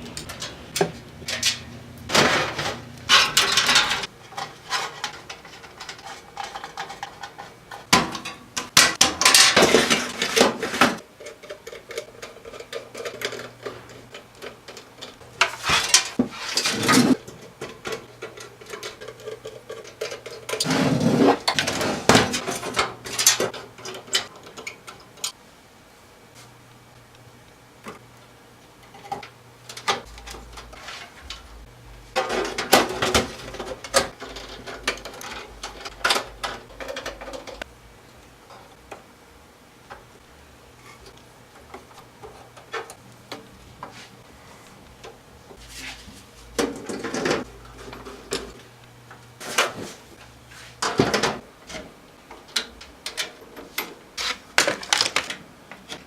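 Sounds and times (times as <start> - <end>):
computer parts clicking and rattling: 1.2 - 10.6, 11.2 - 20.7, 32.2 - 37.7.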